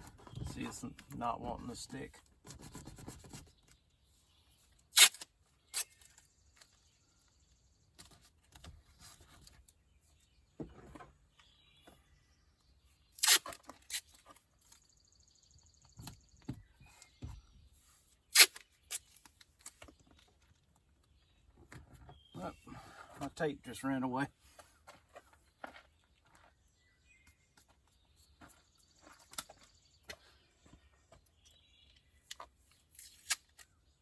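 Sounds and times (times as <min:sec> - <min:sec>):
tape handling noises: 0:04.8 - 0:06.8, 0:13.2 - 0:14.9, 0:18.2 - 0:20.7, 0:32.0 - 0:33.8
masking tape ripping: 0:04.9 - 0:06.0, 0:13.2 - 0:14.2, 0:18.3 - 0:19.1.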